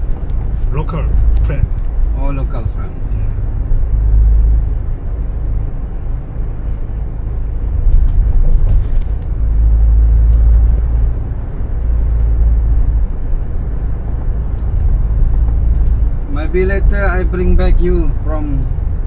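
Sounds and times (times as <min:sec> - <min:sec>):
car engine and road rumble: 0:00.0 - 0:19.0.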